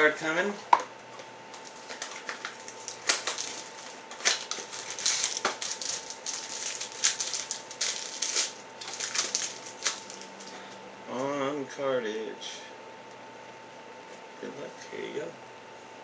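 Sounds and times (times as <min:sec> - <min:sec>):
card pack wrappers crinkling: 0:01.6 - 0:10.6.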